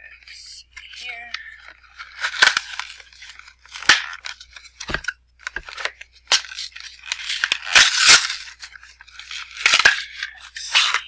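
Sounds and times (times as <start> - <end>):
cardboard box tearing: 7.2 - 8.5.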